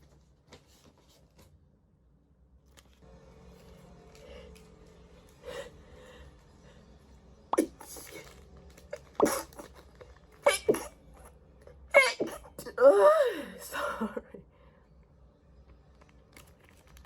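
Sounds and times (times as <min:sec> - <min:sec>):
woman sneezing: 0:10.4 - 0:11.0, 0:11.9 - 0:13.7.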